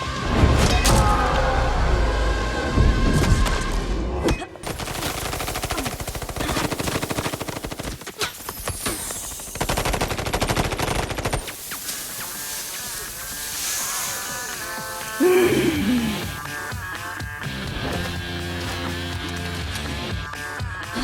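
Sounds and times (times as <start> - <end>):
rapid automatic gunfire: 4.6 - 11.8.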